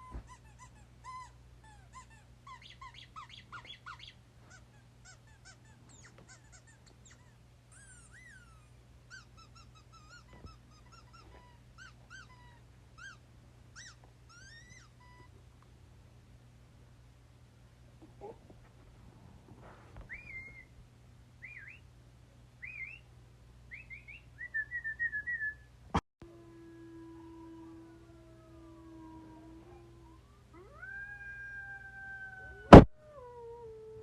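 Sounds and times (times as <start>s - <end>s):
dog whimpering: 0.0s - 13.2s, 13.8s - 15.3s, 18.0s - 18.4s
faint low hum: 0.0s - 34.0s.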